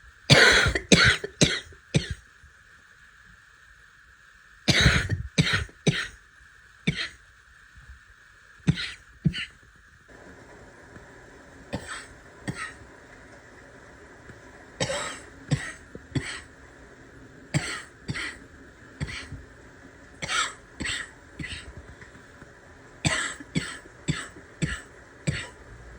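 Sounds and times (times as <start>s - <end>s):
person coughing harshly: 0.3s - 2.2s, 4.7s - 6.2s, 6.9s - 7.2s, 8.7s - 9.6s, 11.8s - 12.8s, 14.8s - 16.5s, 17.6s - 18.4s, 19.0s - 19.4s, 20.2s - 21.7s, 23.1s - 25.6s.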